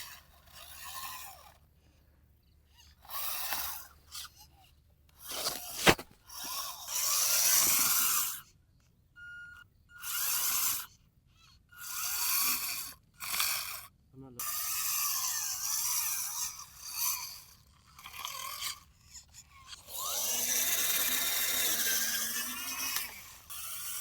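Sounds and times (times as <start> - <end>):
small electric motor whirring: 0.0 - 2.0, 2.7 - 8.6, 9.2 - 24.0
dirt scraping: 5.2 - 6.6
sharp click: 5.3 - 6.2.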